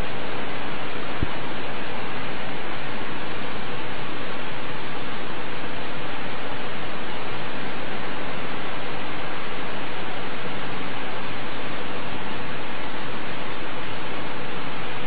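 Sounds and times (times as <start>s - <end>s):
loud steady hiss: 0.0s - 15.0s.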